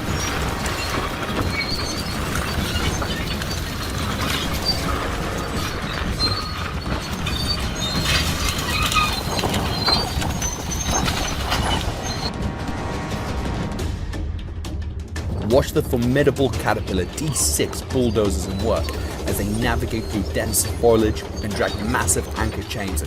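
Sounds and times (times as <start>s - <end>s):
metal chain clattering: 0.0s - 12.3s
bushes crackling: 0.0s - 12.4s, 15.5s - 23.0s.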